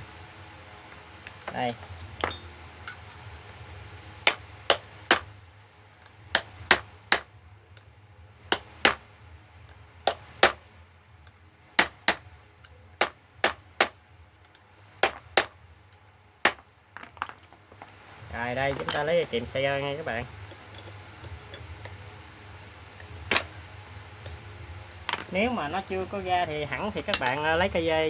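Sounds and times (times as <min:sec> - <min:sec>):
small hammer tapping on metal: 0:01.7 - 0:03.3.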